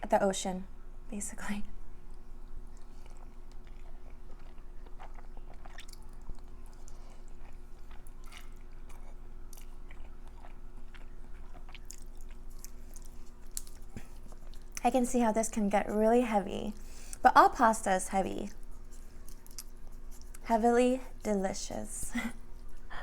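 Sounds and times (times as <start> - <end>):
wet chewing and mouth smacks: 2.1 - 14.9, 18.5 - 20.4.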